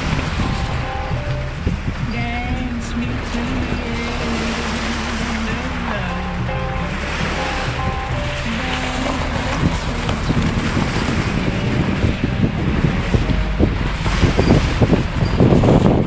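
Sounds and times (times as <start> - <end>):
sea rushing: 0.0 - 16.0
wind buffeting microphone: 0.0 - 16.0.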